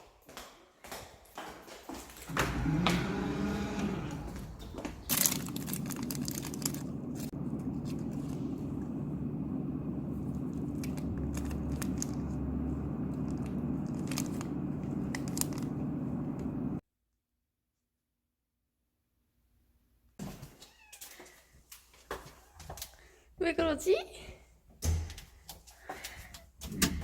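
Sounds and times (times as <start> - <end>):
steady low hum: 2.3 - 16.8
clicks and crinkling: 2.5 - 16.8.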